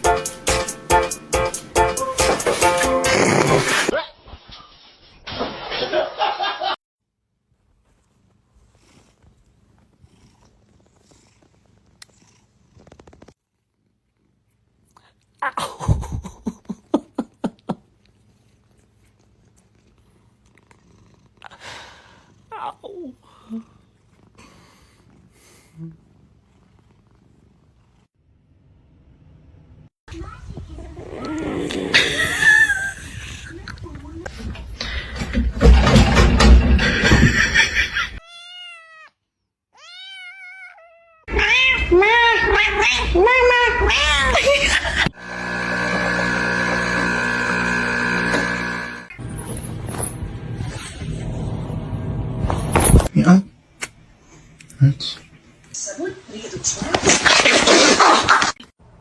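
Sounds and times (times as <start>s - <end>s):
cat meowing: 38.2s - 43.2s.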